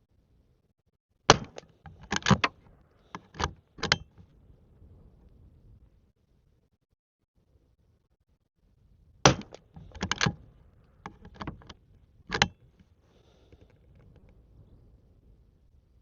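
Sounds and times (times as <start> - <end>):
rifle shot crack: 1.3 - 1.7, 9.2 - 10.0
rifle lever clicking and clacking: 1.3 - 4.2, 9.3 - 10.4, 11.0 - 12.8.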